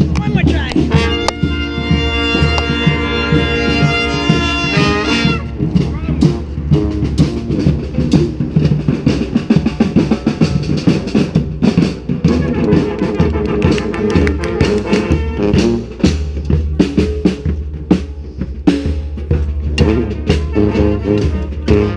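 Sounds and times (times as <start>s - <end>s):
drumming: 0.0s - 21.9s
brass band horns: 0.4s - 17.1s, 19.6s - 21.9s.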